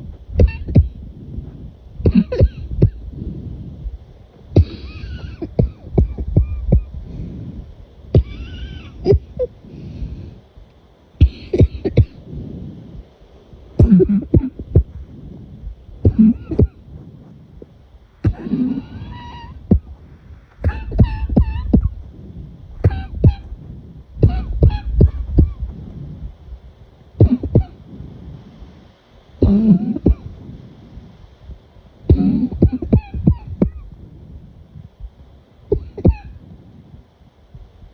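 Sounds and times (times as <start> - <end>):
breathing: 1.0 - 2.0, 3.0 - 5.1, 7.0 - 8.0, 9.6 - 11.5, 12.1 - 13.7, 14.9 - 20.6
person coughing: 2.1 - 3.0, 4.6 - 6.2, 11.2 - 12.2, 13.8 - 14.6, 16.1 - 16.8, 32.1 - 33.0.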